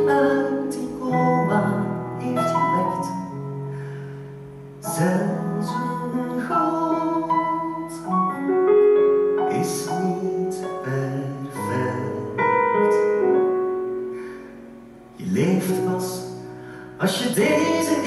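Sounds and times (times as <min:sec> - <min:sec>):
person singing: 0:00.0 - 0:03.6, 0:04.8 - 0:08.5, 0:09.4 - 0:13.4, 0:15.2 - 0:18.0
piano accompaniment: 0:00.0 - 0:18.0.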